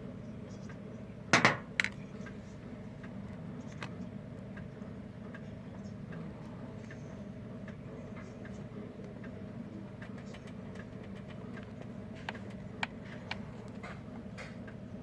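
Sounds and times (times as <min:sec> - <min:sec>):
steady low hum: 0:00.0 - 0:15.0
sharp knocks: 0:01.4 - 0:01.9.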